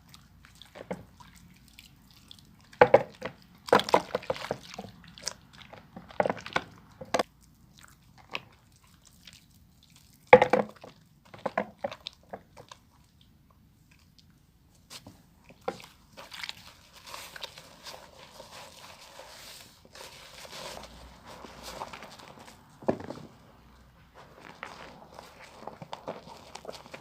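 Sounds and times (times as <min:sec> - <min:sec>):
bar soap lathering by hand: 0:24.2 - 0:27.0.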